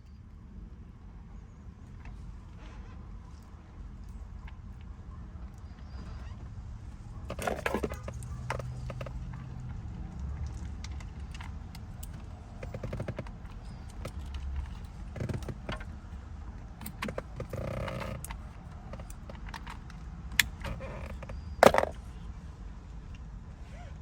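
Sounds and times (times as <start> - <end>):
metal parts clicking and clinking: 20.4 - 22.0.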